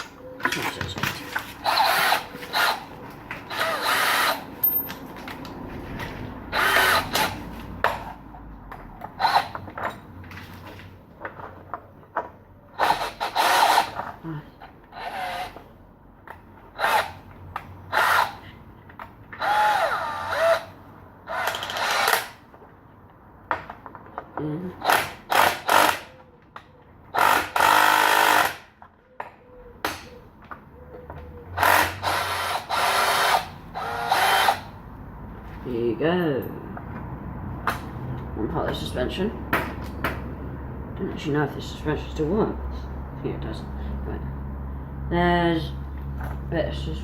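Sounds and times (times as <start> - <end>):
power tool bursts on bolts: 3.5 - 4.5, 21.3 - 22.4, 24.8 - 26.1, 27.1 - 28.7, 31.6 - 34.7.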